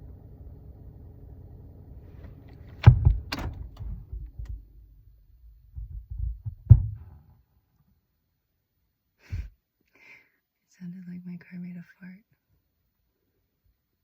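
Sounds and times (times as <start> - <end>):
low hum inside car: 0.0 - 7.2, 10.7 - 12.3
sharp thuds: 2.2 - 4.6, 5.7 - 7.3.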